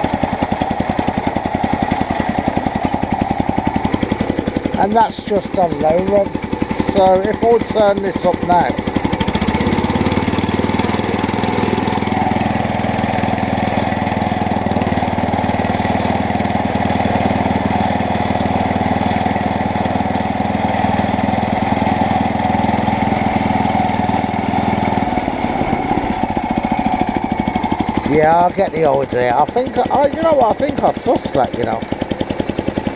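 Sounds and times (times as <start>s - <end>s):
lawnmower engine running: 0.0s - 32.9s.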